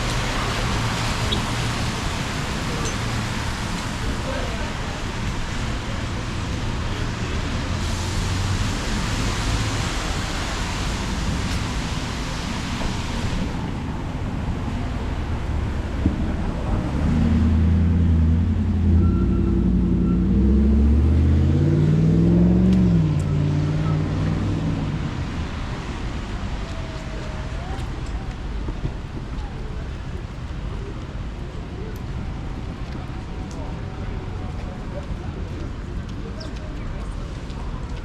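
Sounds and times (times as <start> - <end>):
tyres hissing on wet road: 0.0 - 19.0, 20.3 - 38.0
vehicle engine pulling away: 15.5 - 26.4.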